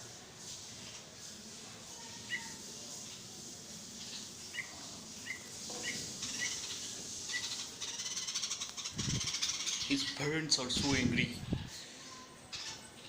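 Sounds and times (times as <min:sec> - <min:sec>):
small bird chirping: 0:02.0 - 0:03.2, 0:04.0 - 0:10.3, 0:12.1 - 0:13.0.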